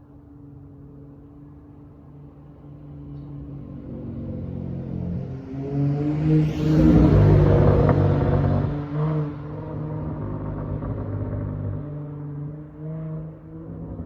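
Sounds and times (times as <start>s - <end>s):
car engine through exhaust: 6.1s - 14.0s.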